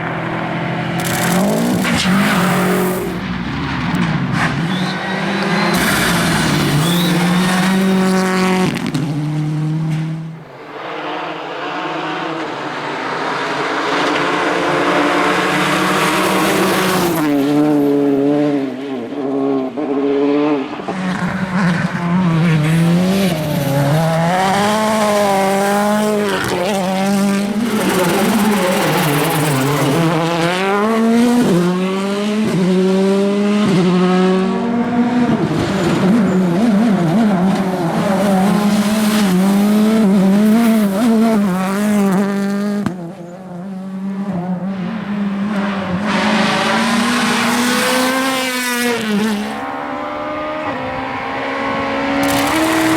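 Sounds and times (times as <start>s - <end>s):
rally car engines revving: 0.0s - 52.9s
rushing noise: 10.4s - 15.2s.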